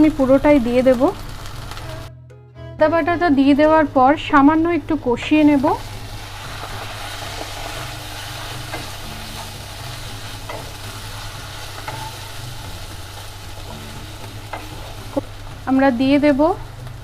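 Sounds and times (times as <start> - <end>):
paste sizzling in hot oil: 5.5 - 15.7.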